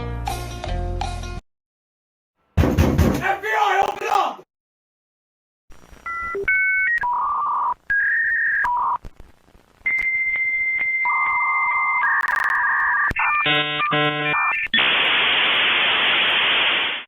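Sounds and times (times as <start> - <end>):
electronic beep tones: 11.1 - 13.1.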